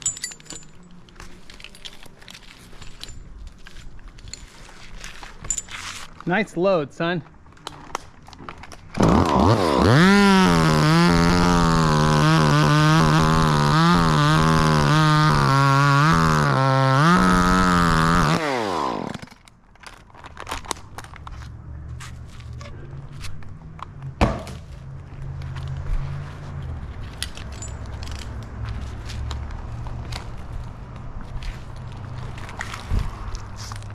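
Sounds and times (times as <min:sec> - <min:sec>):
chainsaw cutting wood: 0:09.0 - 0:19.4.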